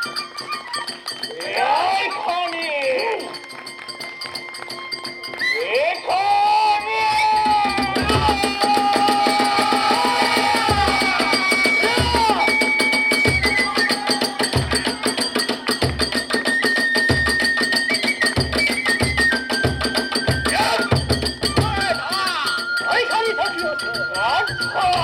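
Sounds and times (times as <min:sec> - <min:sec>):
small hand cymbals clashing: 0:00.0 - 0:06.1
bamboo flute long notes: 0:00.0 - 0:14.8, 0:16.4 - 0:25.0
large drum beats: 0:07.3 - 0:16.4, 0:18.4 - 0:22.2.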